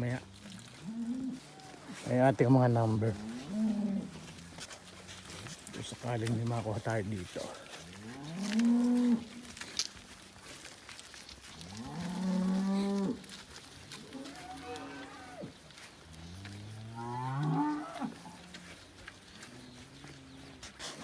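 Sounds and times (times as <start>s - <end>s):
cows mooing: 2.9s - 4.4s, 7.9s - 9.5s, 11.6s - 13.3s, 14.0s - 18.6s.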